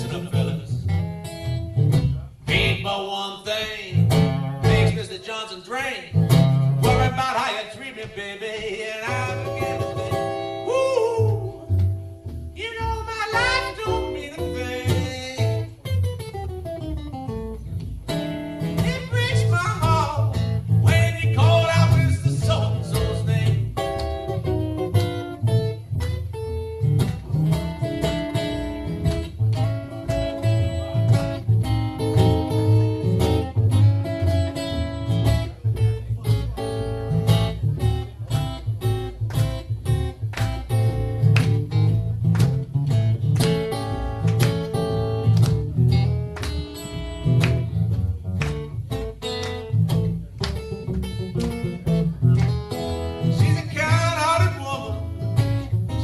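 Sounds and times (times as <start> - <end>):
acoustic guitar picked and strummed: 0.0 - 56.0
person singing: 6.8 - 11.6, 12.6 - 15.7.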